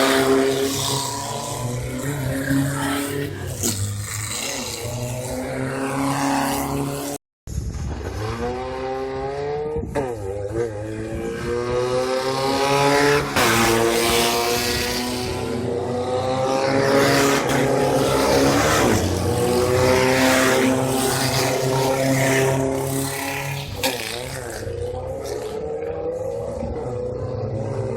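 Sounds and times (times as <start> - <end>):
race car engine accelerating: 7.9 - 27.9.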